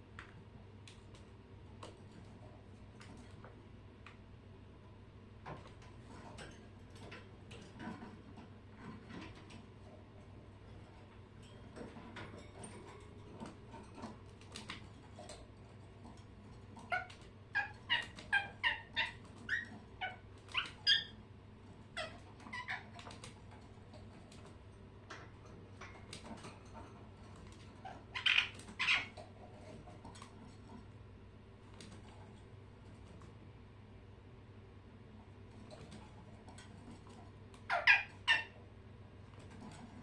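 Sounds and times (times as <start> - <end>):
birds chirping: 16.8 - 23.4, 25.1 - 29.4, 37.6 - 38.7.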